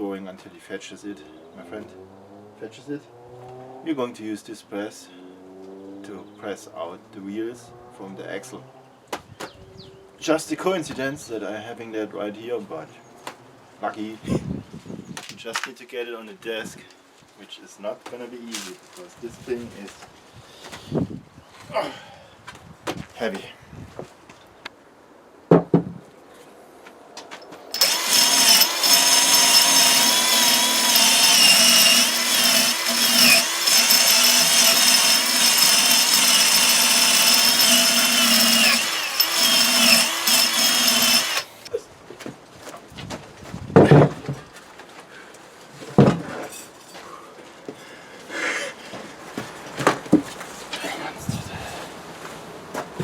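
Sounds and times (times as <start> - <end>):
handheld power tool running: 27.7 - 41.7.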